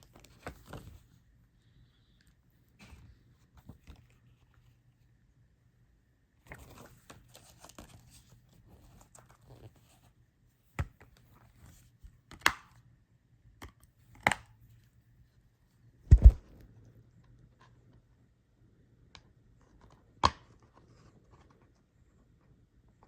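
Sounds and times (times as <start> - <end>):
heavy thumps: 16.1 - 16.6.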